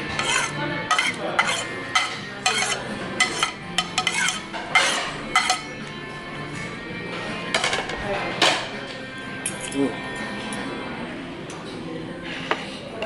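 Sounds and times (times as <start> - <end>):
cutlery clinking on a plate: 0.0 - 5.8.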